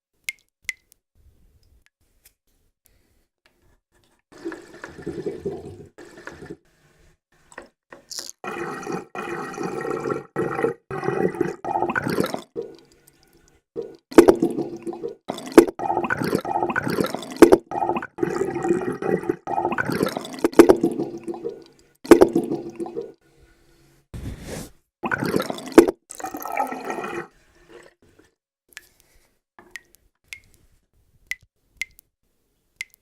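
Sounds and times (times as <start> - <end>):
water splashing and gurgling: 8.4 - 12.9, 13.8 - 23.2, 25.0 - 27.8.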